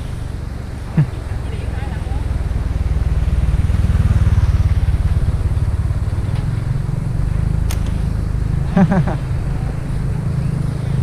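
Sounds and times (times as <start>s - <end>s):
motorcycle engine running: 0.0s - 11.0s
sharp click: 7.7s - 8.0s.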